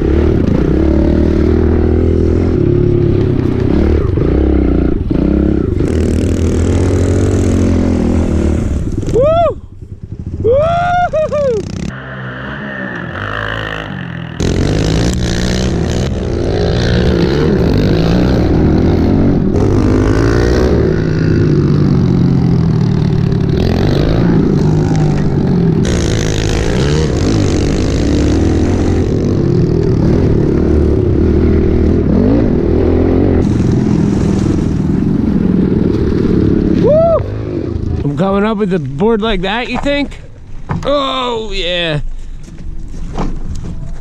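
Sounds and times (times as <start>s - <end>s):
pit bike engines revving: 11.5s - 36.8s.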